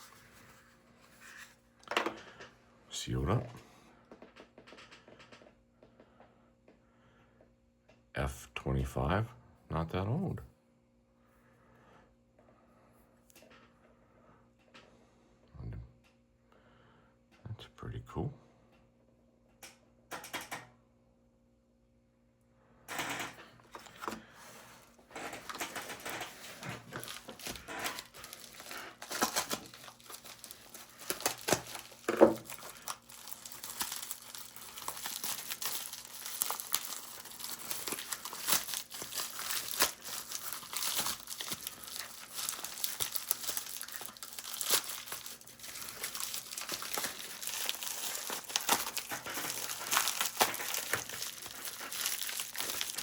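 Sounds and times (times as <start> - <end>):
packaging crumpling and crinkling: 0.0 - 2.3, 23.0 - 53.0
packaging tearing: 23.7 - 53.0.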